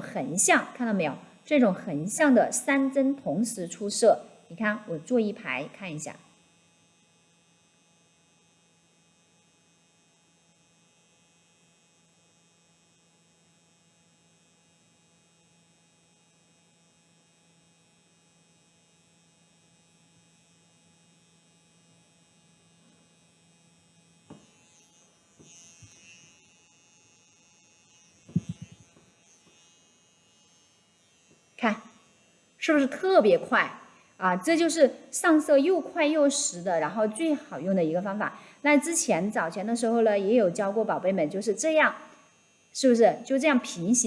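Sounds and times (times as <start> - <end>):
tattoo machine humming: 0.0 - 44.0.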